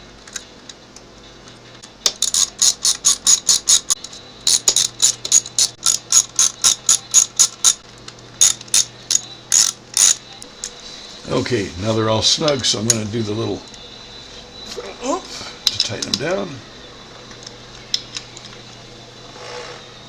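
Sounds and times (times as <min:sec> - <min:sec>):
hand ratchet clicking: 0:02.1 - 0:07.8, 0:08.4 - 0:10.2.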